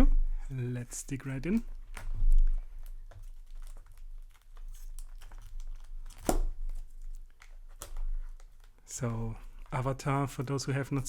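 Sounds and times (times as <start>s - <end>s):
packaging crinkling and tearing: 1.2s - 11.0s.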